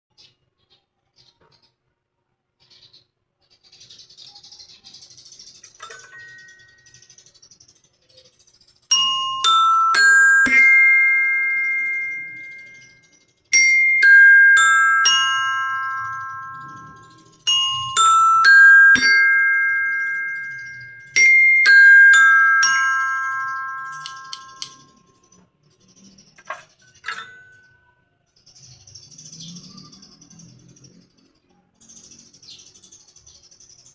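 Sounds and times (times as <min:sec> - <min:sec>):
four-note ringing chime: 0:08.9 - 0:13.0, 0:13.6 - 0:25.0.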